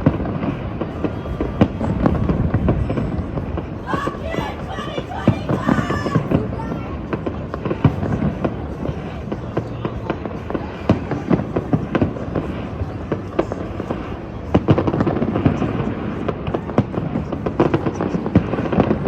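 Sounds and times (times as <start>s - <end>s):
fireworks bangs and crackles: 0.0s - 19.0s.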